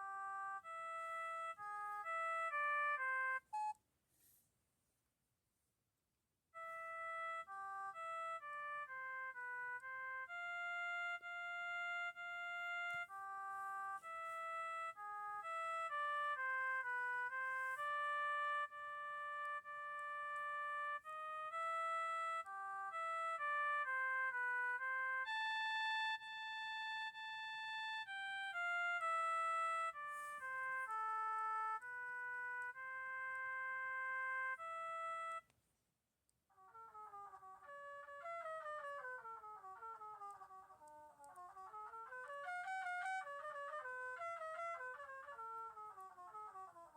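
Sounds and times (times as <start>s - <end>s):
electronic ringtone melody: 0.0s - 3.8s.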